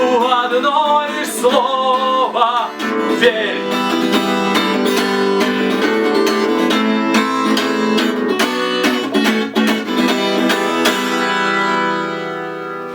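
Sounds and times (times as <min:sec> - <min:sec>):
acoustic guitar strumming: 0:00.0 - 0:12.9.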